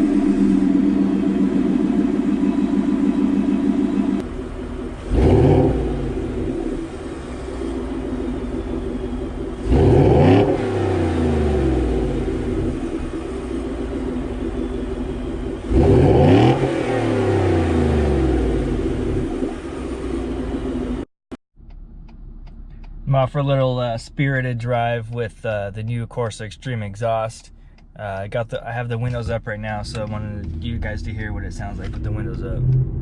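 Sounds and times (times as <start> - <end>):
truck engine idling and revving: 0.0 - 33.0.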